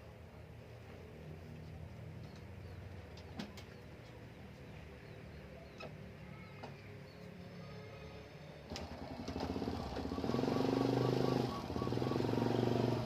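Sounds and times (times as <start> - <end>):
dove cooing: 9.6 - 13.0
small birds chirping: 9.6 - 13.0.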